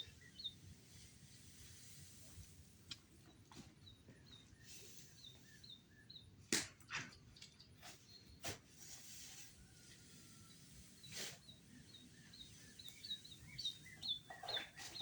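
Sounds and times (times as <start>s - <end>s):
bird chirping: 0.0s - 0.7s, 3.3s - 6.4s, 10.0s - 15.0s.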